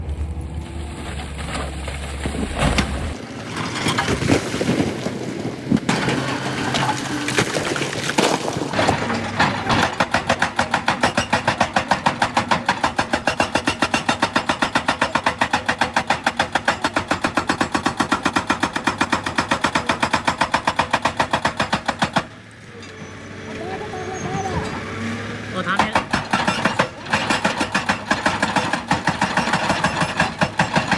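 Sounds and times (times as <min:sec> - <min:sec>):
machinery clattering and scraping: 0:00.0 - 0:14.0.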